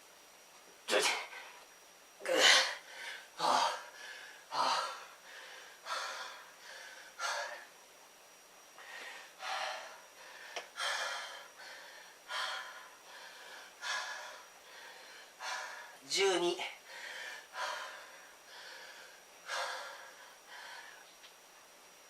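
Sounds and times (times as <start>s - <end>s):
man breathing hard: 2.2s - 7.7s, 8.8s - 16.0s, 16.8s - 21.1s.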